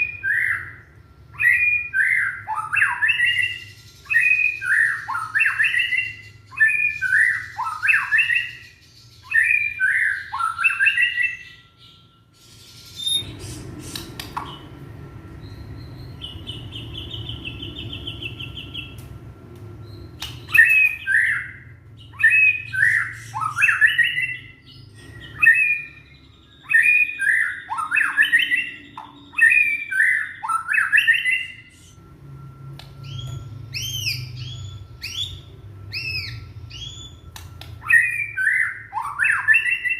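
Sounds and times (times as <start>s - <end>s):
clear whistled notes: 0.0s - 13.4s, 14.0s - 39.9s
bird harsh calls: 0.0s - 14.7s, 19.9s - 32.0s.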